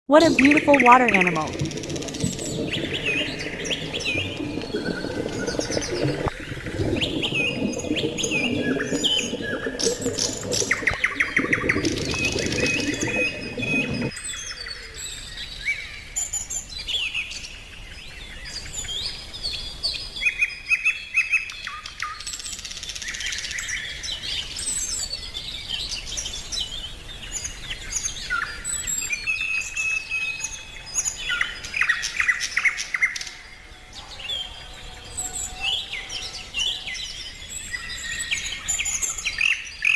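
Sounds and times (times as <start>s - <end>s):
wild birds singing and chirping: 0.2s - 39.9s
low dense rumble: 1.5s - 14.1s.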